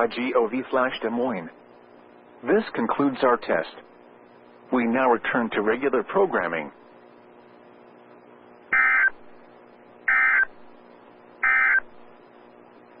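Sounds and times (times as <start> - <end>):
faint steady hum: 0.0 - 13.0
digital data tone bursts: 8.8 - 9.2, 10.1 - 10.5, 11.4 - 11.9.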